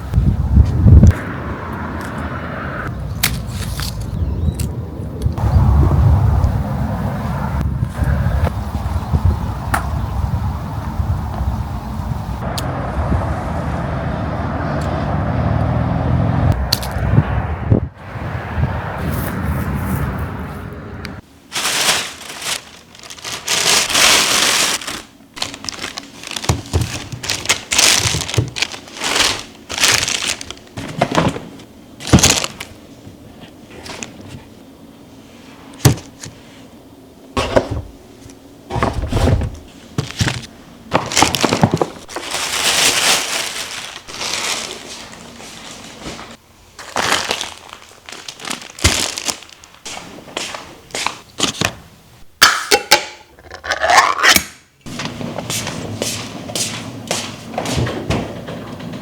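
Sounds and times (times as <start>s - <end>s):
crinkling and rustling: 21.5s - 34.6s, 37.4s - 51.8s, 54.9s - 59.0s.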